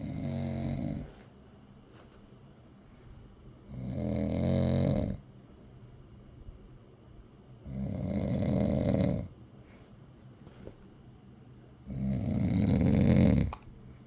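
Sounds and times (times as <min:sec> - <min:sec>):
man snoring: 0:00.0 - 0:01.1, 0:03.7 - 0:05.2, 0:07.7 - 0:09.3, 0:11.9 - 0:13.5.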